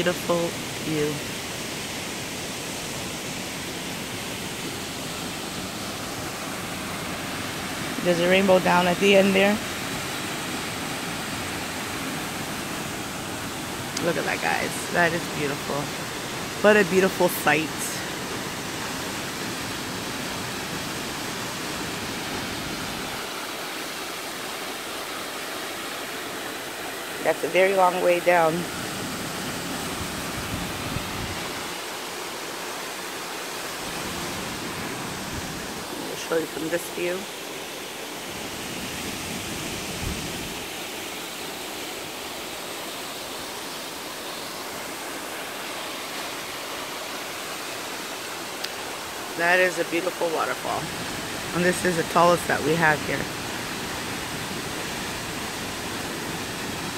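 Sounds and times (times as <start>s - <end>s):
waterfall rushing hiss: 0.0s - 56.9s.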